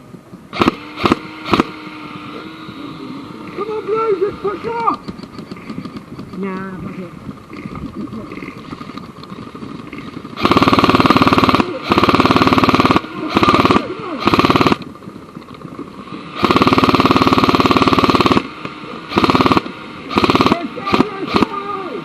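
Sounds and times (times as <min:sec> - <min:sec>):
airsoft rifle automatic fire: 0:00.5 - 0:01.8, 0:09.9 - 0:14.9, 0:16.4 - 0:21.8.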